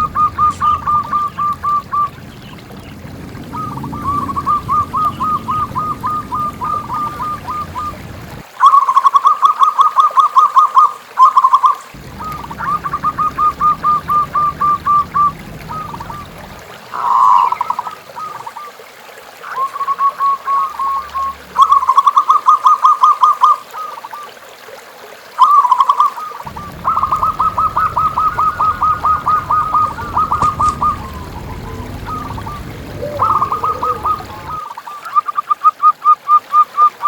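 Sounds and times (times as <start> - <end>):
doves cooing: 0.0 - 8.4, 12.0 - 18.6, 26.5 - 34.7
low rumble: 0.0 - 8.4, 12.0 - 17.0, 26.5 - 34.6.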